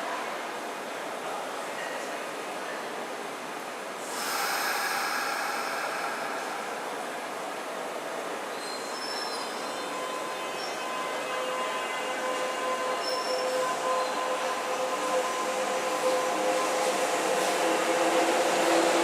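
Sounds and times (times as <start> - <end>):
electric train running on rails: 3.1 - 19.0
train wheel squeals: 8.5 - 18.8.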